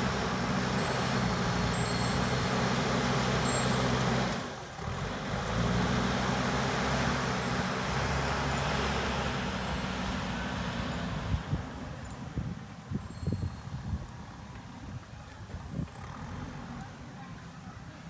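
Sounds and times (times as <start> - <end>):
diesel engine running under load: 0.0 - 12.6, 15.8 - 17.1.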